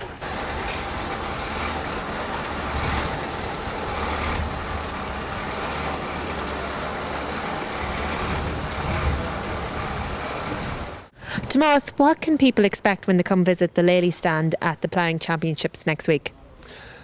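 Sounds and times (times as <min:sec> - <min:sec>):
broad rushing noise: 0:00.0 - 0:11.1
large engine rumbling: 0:00.0 - 0:11.1.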